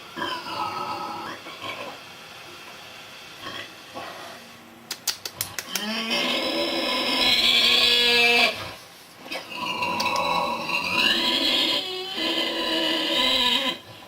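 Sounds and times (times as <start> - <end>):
pig snoring: 0.0 - 2.2, 3.3 - 4.5, 5.7 - 14.0
quick clicks: 4.9 - 5.9.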